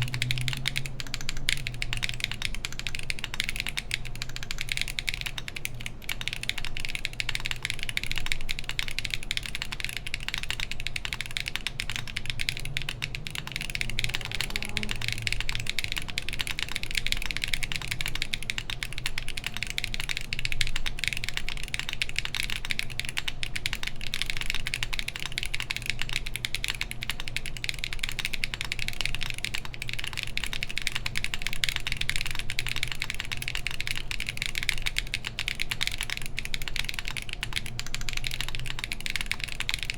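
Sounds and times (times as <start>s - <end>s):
fan humming: 0.0s - 4.2s
mechanical keyboard typing: 0.0s - 39.9s.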